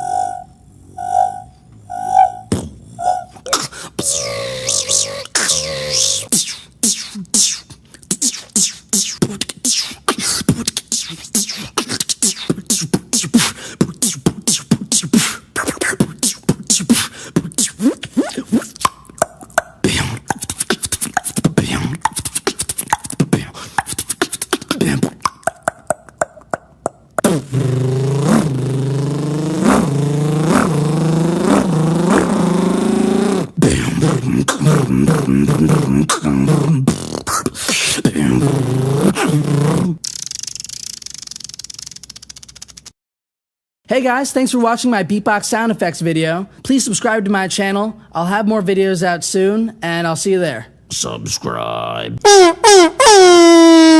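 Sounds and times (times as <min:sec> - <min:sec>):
pulsing vocal buzzing hum: 0:00.0 - 0:06.4, 0:27.3 - 0:36.9
beatboxing mouth clicks: 0:02.5 - 0:43.0.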